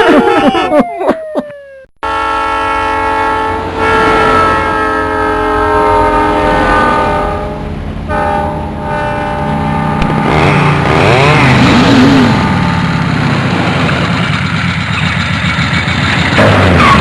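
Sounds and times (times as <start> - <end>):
train horn: 2.0 - 11.3
train rumble: 2.1 - 17.0.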